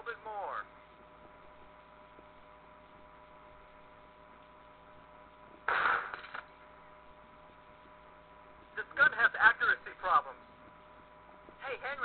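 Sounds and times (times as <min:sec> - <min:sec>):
faint electrical hum and hiss: 0:00.0 - 0:12.0
shotgun blast: 0:05.7 - 0:06.4.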